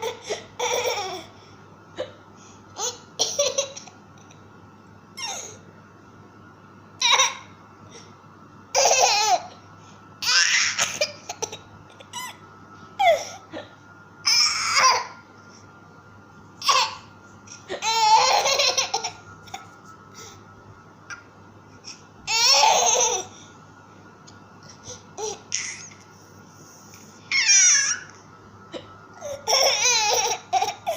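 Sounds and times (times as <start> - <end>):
baby laughing: 17.7 - 19.6, 29.2 - 30.9.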